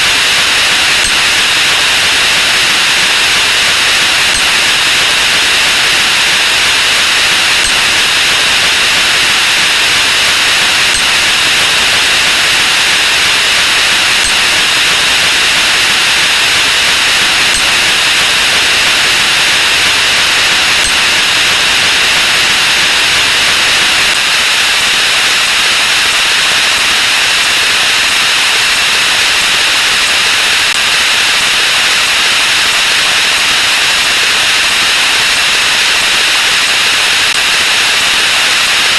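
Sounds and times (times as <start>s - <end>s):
loud static-like hiss: 0.0s - 38.9s.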